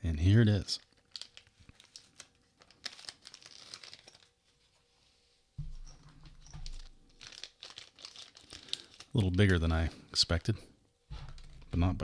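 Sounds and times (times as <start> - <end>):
packaging crinkling and rustling: 0.7 - 4.7, 6.2 - 9.9, 11.1 - 12.0.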